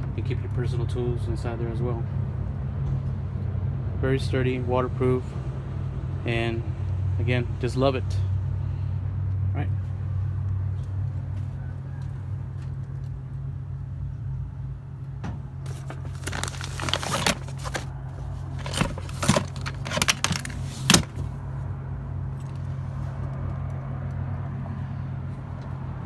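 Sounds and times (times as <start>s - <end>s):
vehicle engine humming: 0.0s - 26.0s
metallic clinks and rattles: 15.7s - 21.3s.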